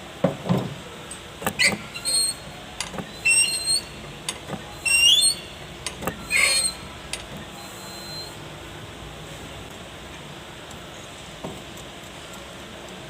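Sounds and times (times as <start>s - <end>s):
diesel injector squealing: 1.4s - 8.4s.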